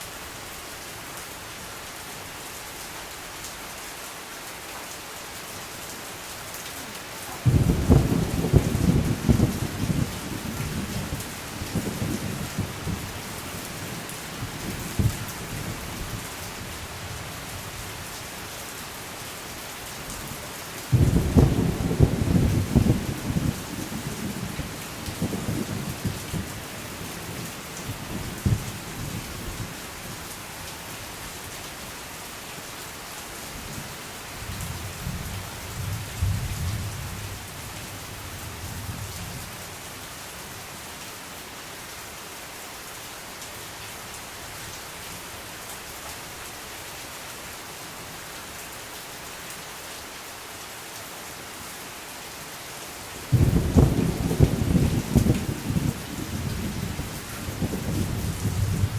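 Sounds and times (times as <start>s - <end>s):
steady rain falling: 0.0s - 58.9s
thunder rumbling: 7.4s - 15.9s, 20.9s - 29.1s, 53.3s - 58.9s.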